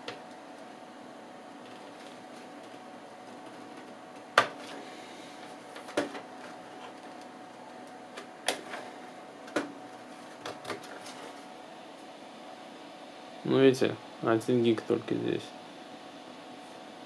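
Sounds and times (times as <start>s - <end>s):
faint steady hum: 0.0s - 17.0s
clicks and knocks of computer case: 3.4s - 4.7s, 5.7s - 6.6s, 8.1s - 8.8s, 9.5s - 11.4s.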